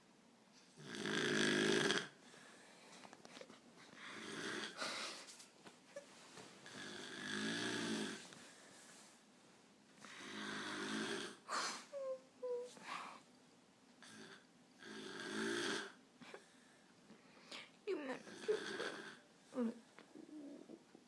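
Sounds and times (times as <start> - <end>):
woman snoring loudly: 0.8 - 2.2, 4.0 - 4.9, 6.7 - 8.2, 10.1 - 11.5, 14.0 - 16.0, 18.2 - 19.8.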